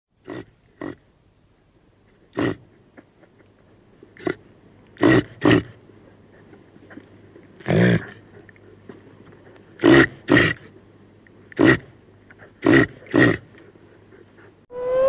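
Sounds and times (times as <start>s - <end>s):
deer calling: 14.7s - 15.0s.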